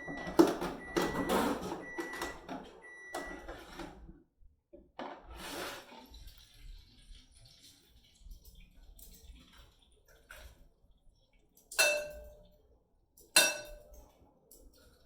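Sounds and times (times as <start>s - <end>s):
appliance beeping: 0.0s - 4.0s
kitchen utensils and dishes clattering: 0.0s - 4.1s, 5.0s - 6.8s, 11.7s - 12.5s, 13.2s - 14.7s.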